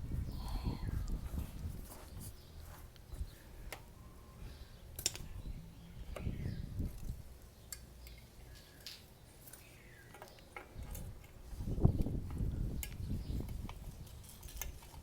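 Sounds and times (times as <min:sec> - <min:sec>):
metallic clicks and clinks: 0:13.9 - 0:15.0.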